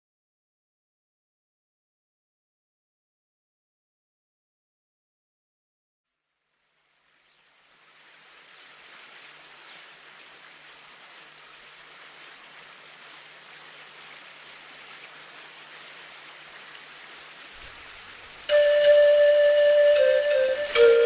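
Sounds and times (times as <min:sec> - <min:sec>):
falling water rushing: 0:06.7 - 0:21.0.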